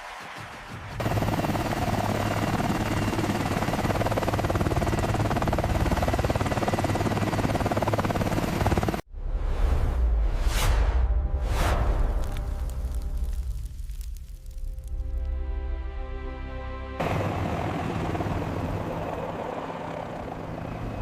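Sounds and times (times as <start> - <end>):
helicopter rotor beat: 0.1 - 9.1, 17.0 - 21.0
helicopter engine drone: 0.3 - 9.0, 16.9 - 21.0.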